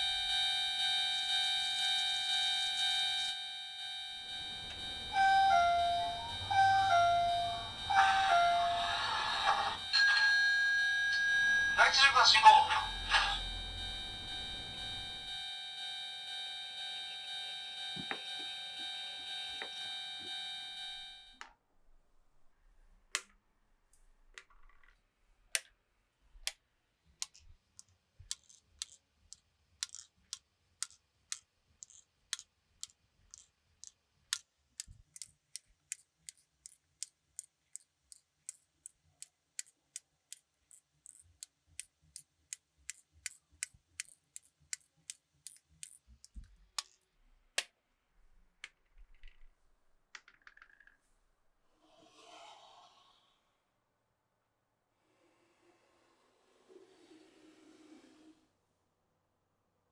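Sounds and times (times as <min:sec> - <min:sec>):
steady electronic tone: 0:01.1 - 0:15.4
marbles clicking on wooden run: 0:27.2 - 0:47.0, 0:50.2 - 0:51.0.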